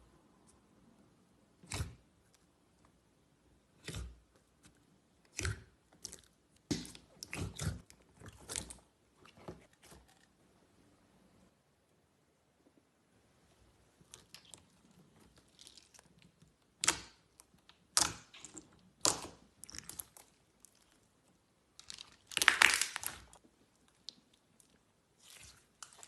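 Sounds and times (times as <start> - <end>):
slime crackling and popping: 15.3 - 21.1, 21.7 - 26.0.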